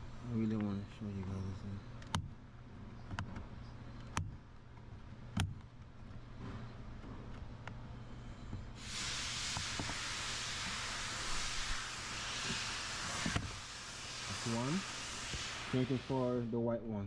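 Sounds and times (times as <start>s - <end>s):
low steady hum: 0.0s - 17.0s
steady hiss: 8.2s - 17.0s.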